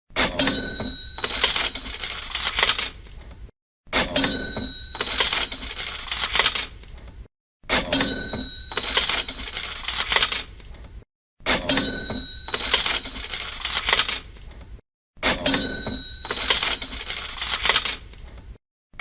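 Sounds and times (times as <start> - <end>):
drawer and coins rattling: 0.2 - 7.0, 7.7 - 10.8, 11.5 - 14.6, 15.2 - 18.6
cash register bell ding: 0.3 - 2.8, 4.0 - 6.4, 7.7 - 10.2, 11.6 - 14.0, 15.2 - 17.8.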